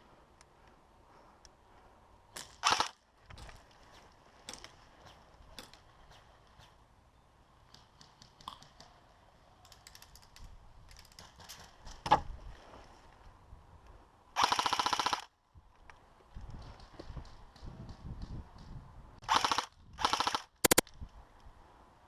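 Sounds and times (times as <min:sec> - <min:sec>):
airsoft rifle full-auto burst: 0:02.6 - 0:03.0, 0:14.4 - 0:15.3, 0:19.2 - 0:20.8
sharp crack: 0:20.6 - 0:20.9.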